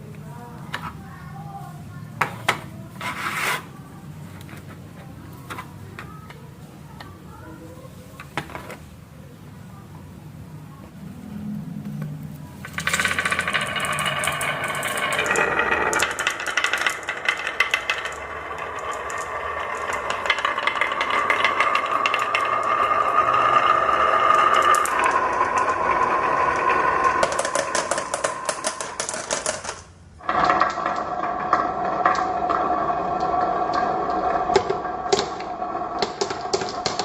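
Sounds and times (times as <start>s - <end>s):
steady rolling hum: 3.6s - 36.9s
marbles clacking on tracks: 12.6s - 37.0s.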